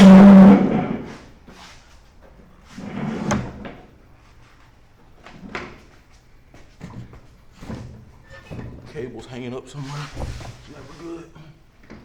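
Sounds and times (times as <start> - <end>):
metal deck clanging: 6.7 - 9.2.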